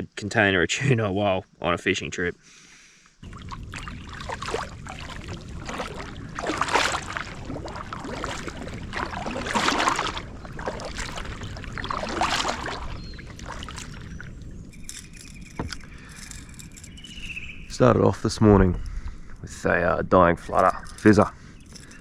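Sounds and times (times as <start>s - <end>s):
paddle swishing water: 3.2s - 14.6s.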